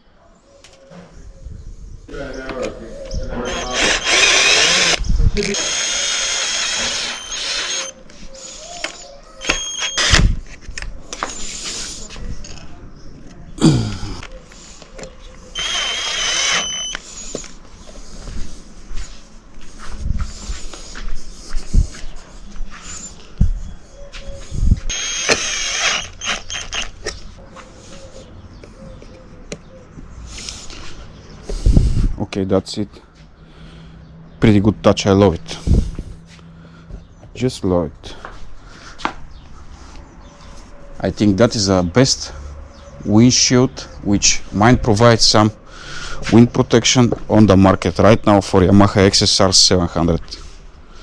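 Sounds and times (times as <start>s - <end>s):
power drill running: 3.4s - 8.0s, 9.4s - 10.2s, 15.6s - 17.4s, 24.9s - 27.1s
small motor whirring: 3.4s - 8.0s, 15.6s - 17.4s, 24.9s - 27.2s.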